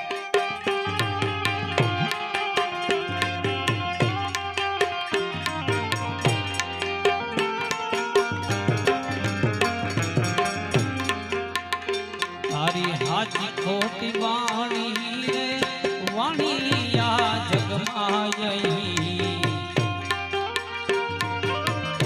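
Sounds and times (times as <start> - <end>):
melodic lead instrument: 0.0 - 17.0
held accompanying tones: 0.0 - 22.0
tabla rhythm: 0.0 - 22.0.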